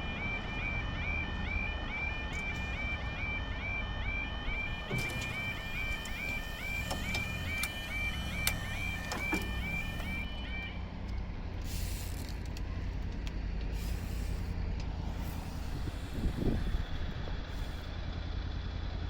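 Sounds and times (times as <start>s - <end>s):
level crossing alarm warbling: 0.0s - 10.8s
low train rumble: 0.0s - 19.0s.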